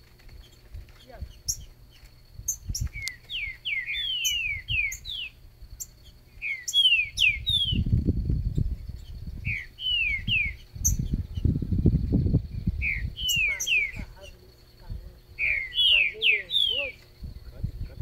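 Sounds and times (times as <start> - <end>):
bird singing whistled notes: 0.4 - 14.5, 15.3 - 17.6
low rumbling microphone noise: 4.4 - 18.0.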